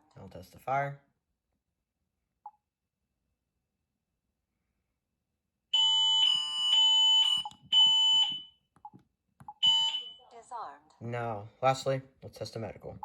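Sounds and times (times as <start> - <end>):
shrill siren beeps: 5.8 - 8.6, 9.6 - 10.3.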